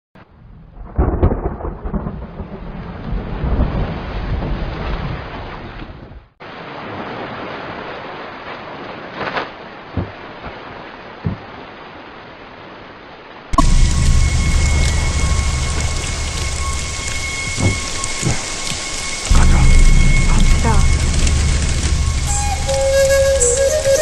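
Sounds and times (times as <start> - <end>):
thunder rumbling: 0.3 - 6.3, 13.6 - 24.0
heavy rain: 0.3 - 24.0.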